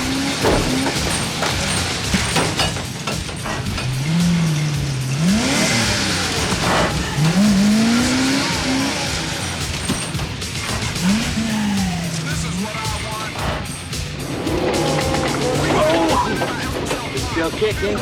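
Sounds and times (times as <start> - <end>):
tires squealing and skidding: 0.0 - 18.0
vehicle engine revving: 0.0 - 18.0.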